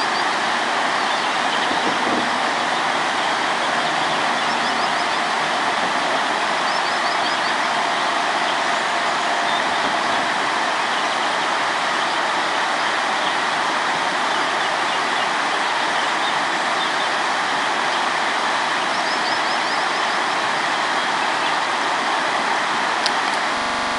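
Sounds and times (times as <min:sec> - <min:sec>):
bird chirping: 0:00.0 - 0:13.5, 0:18.8 - 0:21.6
river water rushing: 0:00.0 - 0:23.9.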